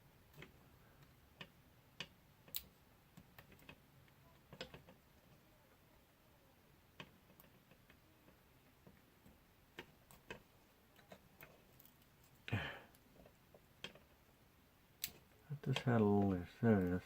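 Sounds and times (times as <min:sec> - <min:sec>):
small clicks and taps of tools: 0:00.3 - 0:05.4, 0:06.9 - 0:08.0, 0:12.9 - 0:14.2, 0:15.0 - 0:17.0.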